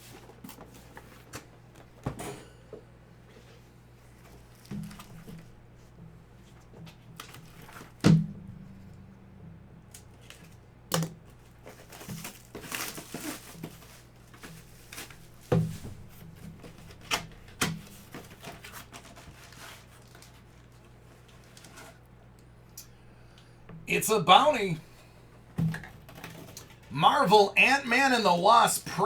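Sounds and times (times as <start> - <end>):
packaging crinkle: 11.6 - 15.4, 16.8 - 22.0.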